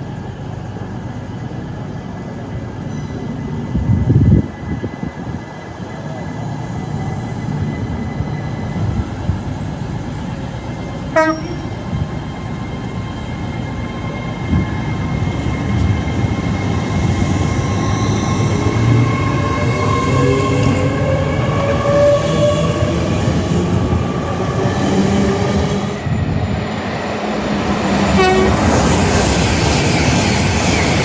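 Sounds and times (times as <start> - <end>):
train rumbling past: 0.0 - 31.0
train horn toot: 11.1 - 11.8, 28.0 - 28.9.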